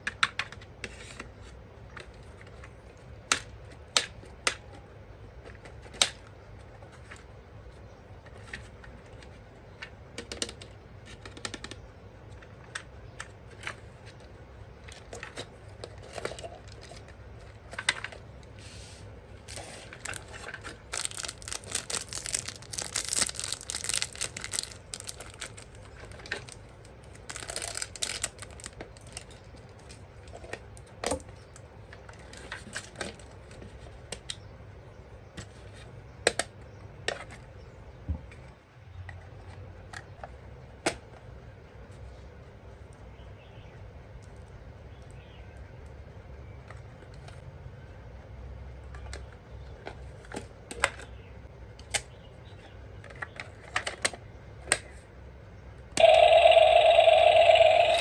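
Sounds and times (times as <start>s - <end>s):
plastic parts clicking and tapping: 8.2s - 18.3s, 19.5s - 31.3s
packaging crinkling and tearing: 19.4s - 29.4s.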